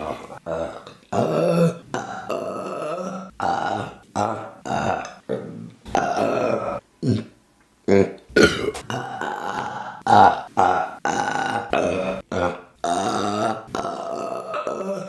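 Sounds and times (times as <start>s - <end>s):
woman burping: 5.9s - 7.3s, 7.9s - 15.0s.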